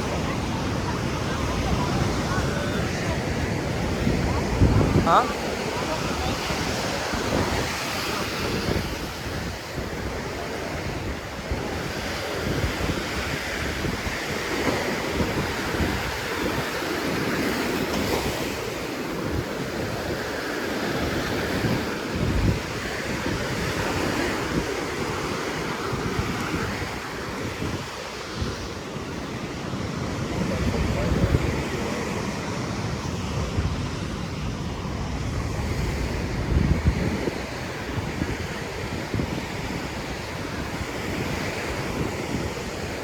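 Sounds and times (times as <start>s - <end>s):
waves breaking on a beach: 0.0s - 43.0s
wind rumbling on microphone: 0.0s - 43.0s.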